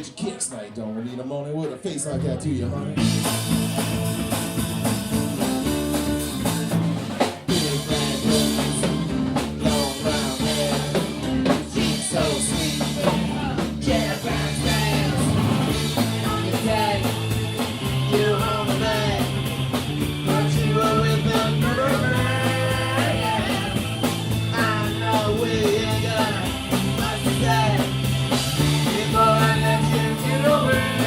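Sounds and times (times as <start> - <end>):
drums: 0.0 - 31.0
rock band playing: 2.1 - 31.0
person singing: 7.5 - 19.5, 20.2 - 28.0, 28.8 - 31.0.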